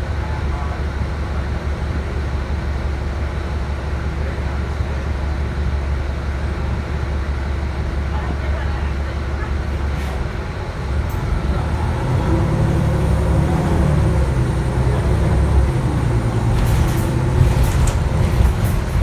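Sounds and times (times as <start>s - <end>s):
bus engine drone: 0.0s - 19.0s
light clicks and rattles: 12.8s - 19.0s.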